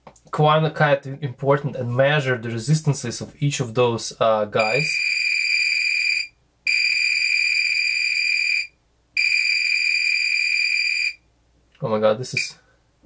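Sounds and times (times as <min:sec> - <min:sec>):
multimeter high-pitched beeps: 0:04.6 - 0:11.2.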